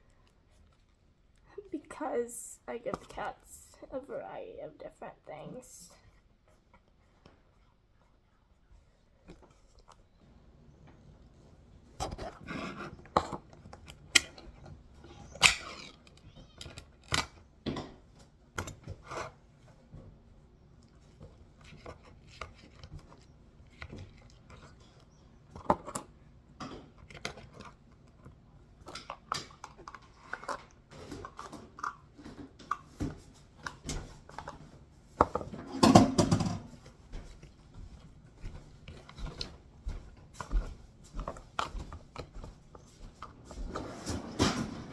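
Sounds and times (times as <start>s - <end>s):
containers and bowls clattering: 28.9s - 36.9s.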